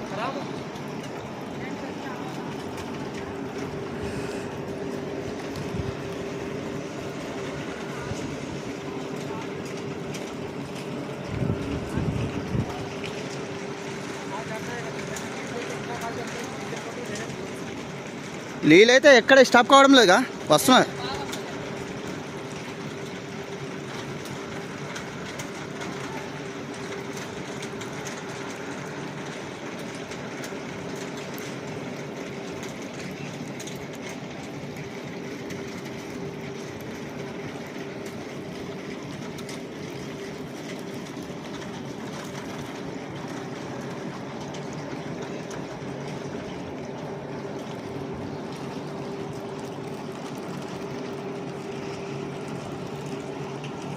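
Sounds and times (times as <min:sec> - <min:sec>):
faint crackles: 0:00.0 - 0:53.9
steady hum: 0:00.0 - 0:53.9
machine hissing: 0:03.5 - 0:09.7.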